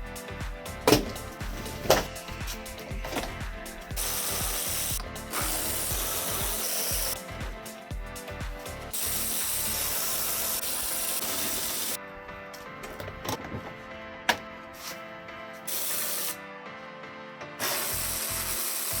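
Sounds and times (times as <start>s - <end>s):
background music with steady beat: 0.0s - 19.0s
ratchet clicking rapidly: 4.0s - 7.2s.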